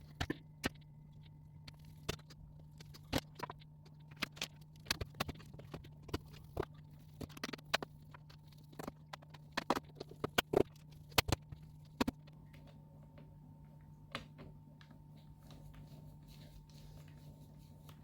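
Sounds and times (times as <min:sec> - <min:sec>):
faint steady hum: 0:00.0 - 0:18.0.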